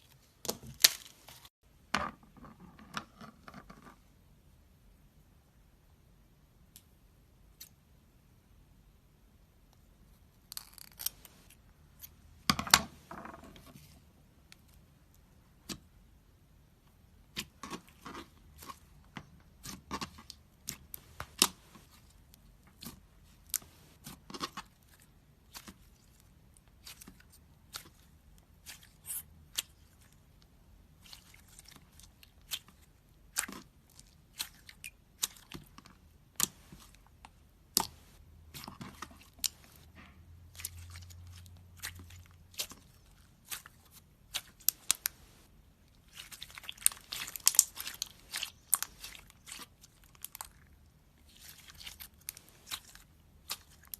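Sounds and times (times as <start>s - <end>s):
slime squishing and crackling: 17.2s - 53.9s.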